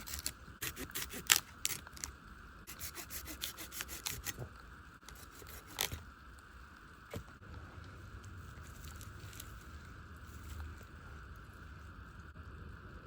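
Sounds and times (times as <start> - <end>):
tool scraping wood: 2.7 - 4.5, 5.1 - 6.0.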